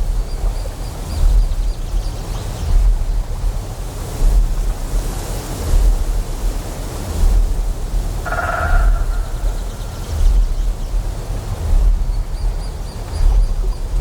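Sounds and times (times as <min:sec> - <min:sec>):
flowing water hiss: 0:00.0 - 0:14.0
deep generator hum: 0:07.2 - 0:14.0.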